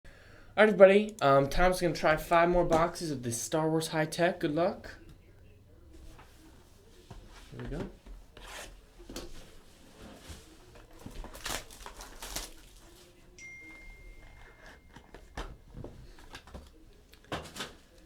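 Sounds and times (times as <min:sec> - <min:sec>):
card box being handled and opened: 0:07.1 - 0:13.0, 0:13.6 - 0:18.0
faint high tone: 0:13.4 - 0:15.5.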